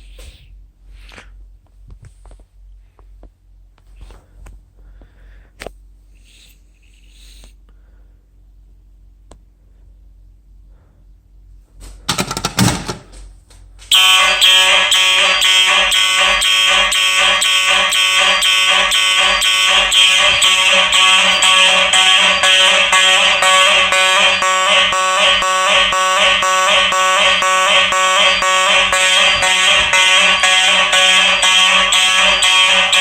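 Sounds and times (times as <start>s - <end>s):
fire alarm horn pulsing: 13.9s - 33.0s.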